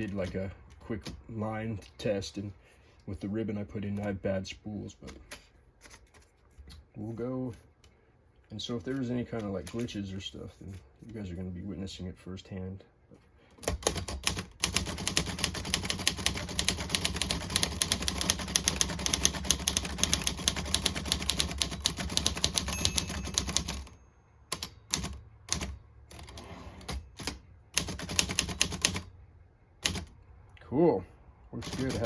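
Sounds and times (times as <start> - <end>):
manual typewriter key strikes: 13.7 - 23.9.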